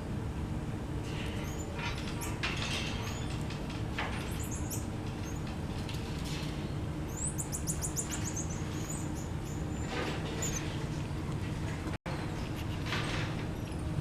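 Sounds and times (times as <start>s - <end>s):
steady low hum: 0.0s - 14.0s
marmoset high-pitched chirping: 4.3s - 5.4s, 7.1s - 9.8s.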